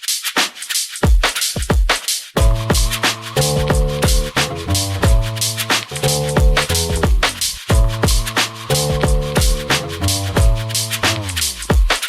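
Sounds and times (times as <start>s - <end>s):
bright hi-hat hits: 0.0s - 12.0s
deep kick drums: 2.4s - 12.0s
electronic lounge music: 2.4s - 12.0s.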